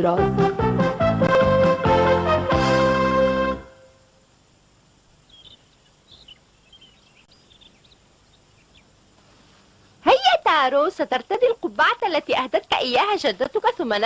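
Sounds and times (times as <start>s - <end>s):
music cue: 0.2s - 4.0s
small birds chirping: 5.0s - 10.0s.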